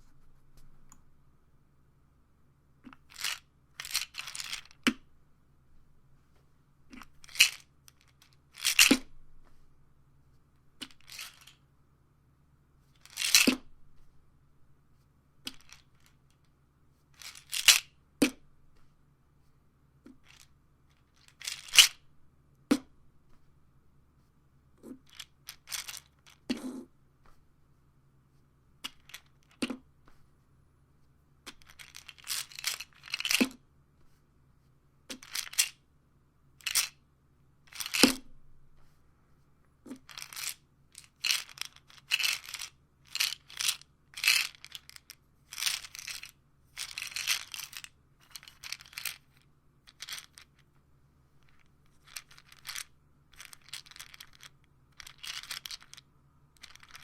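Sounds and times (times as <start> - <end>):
pills rattling in bottle: 2.9 - 4.9, 7.0 - 9.0, 10.8 - 11.6, 13.0 - 13.6, 15.5 - 16.1, 17.2 - 17.9, 20.2 - 22.0, 25.0 - 26.5, 28.8 - 29.7, 31.5 - 33.6, 35.1 - 35.8, 36.6 - 36.9, 37.7 - 38.2, 39.9 - 50.6, 51.4 - 56.0, 56.6 - 57.0.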